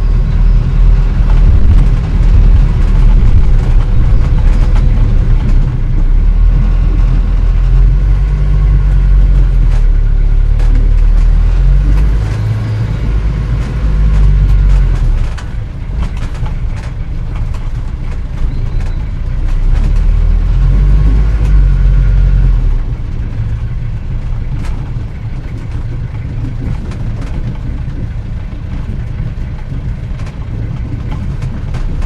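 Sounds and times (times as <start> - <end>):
old car engine rumbling: 0.0 - 32.0
light clicks and rattles: 8.8 - 21.6.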